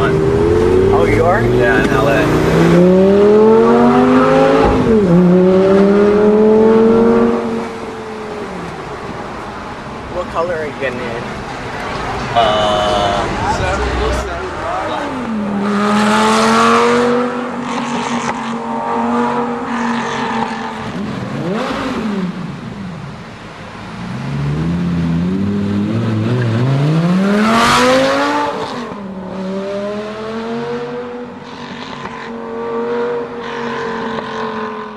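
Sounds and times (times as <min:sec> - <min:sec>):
sports car engine revving: 0:00.0 - 0:07.9, 0:12.9 - 0:22.6, 0:23.9 - 0:34.9.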